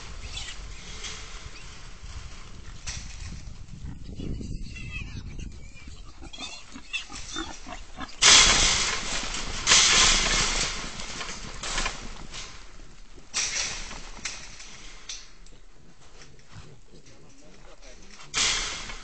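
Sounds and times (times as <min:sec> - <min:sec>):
shuffling: 0:00.0 - 0:19.0
wild hogs squealing: 0:00.1 - 0:00.8, 0:03.9 - 0:08.6
hogs grunting: 0:03.8 - 0:08.4, 0:15.4 - 0:19.0.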